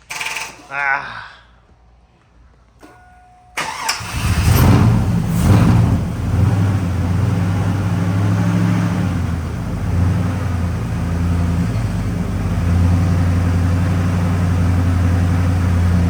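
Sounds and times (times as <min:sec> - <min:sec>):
truck engine running unevenly: 0:04.0 - 0:16.0.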